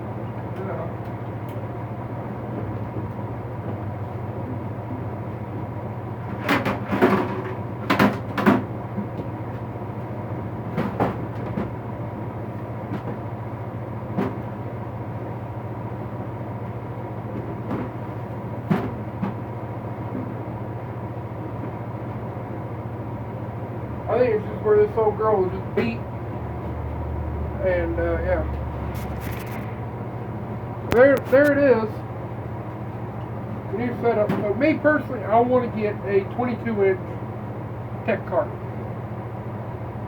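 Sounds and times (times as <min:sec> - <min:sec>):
steady low hum: 0:00.0 - 0:40.0
objects knocking and clattering: 0:06.3 - 0:09.3.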